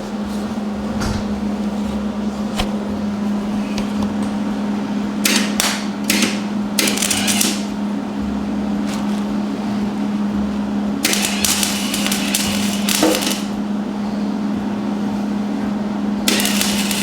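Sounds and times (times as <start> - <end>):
crackling welding arc: 6.1 - 7.7, 11.0 - 13.6, 16.3 - 17.0
welder humming: 9.4 - 13.6, 16.2 - 17.0.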